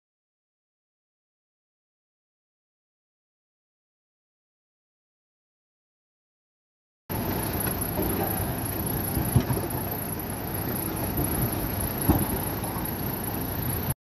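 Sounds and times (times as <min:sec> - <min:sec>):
diesel engine running: 0:07.1 - 0:14.0
sharp knocks: 0:11.2 - 0:12.5.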